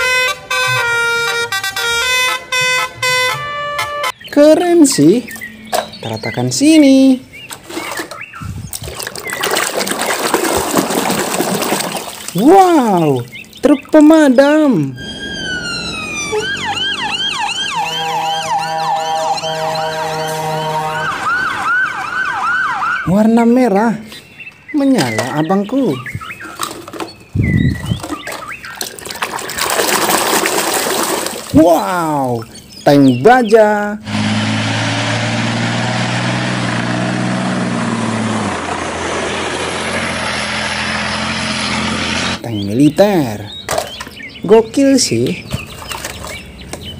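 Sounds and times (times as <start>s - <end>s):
steady tones: 13.6s - 21.7s
electronic siren yelping: 14.7s - 23.1s
motor hum: 15.0s - 21.0s.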